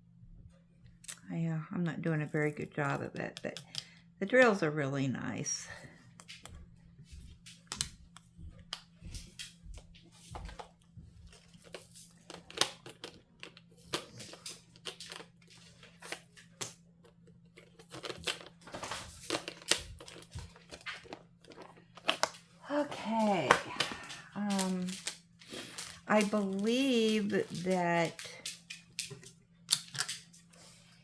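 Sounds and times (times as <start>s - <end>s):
plastic packaging crinkling: 7.3s - 30.8s.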